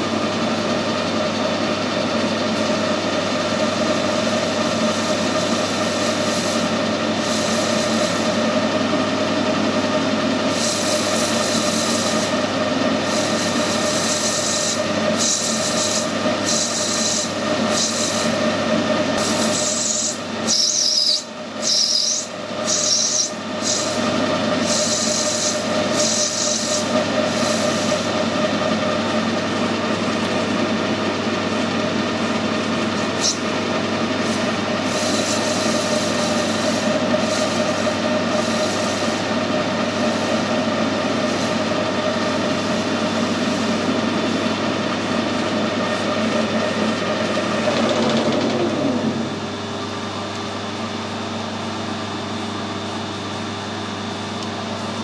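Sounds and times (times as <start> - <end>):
metal lathe running: 0.0 - 55.0
hissing scrape of cutting tool: 4.1 - 8.4, 10.5 - 12.4, 13.0 - 18.4, 19.2 - 28.2, 33.0 - 33.5, 34.2 - 41.7
brief wavering squeal: 19.4 - 23.9.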